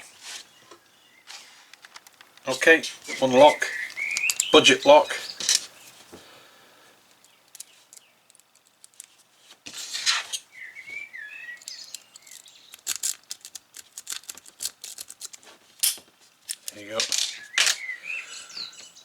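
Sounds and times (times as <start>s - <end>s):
short rustle: 0.0s - 6.3s
padlock metallic clicks: 3.7s - 4.7s, 7.1s - 9.2s, 11.4s - 17.8s.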